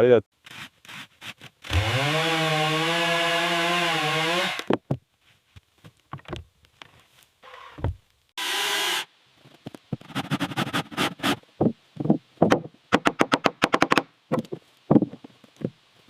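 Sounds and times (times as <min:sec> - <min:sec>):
sharp knocks and thuds: 0:11.6 - 0:15.8.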